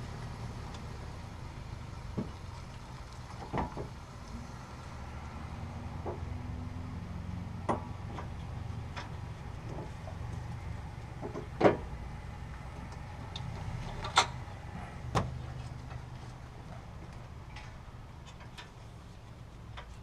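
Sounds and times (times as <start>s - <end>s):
low engine-like hum: 0.0s - 20.0s.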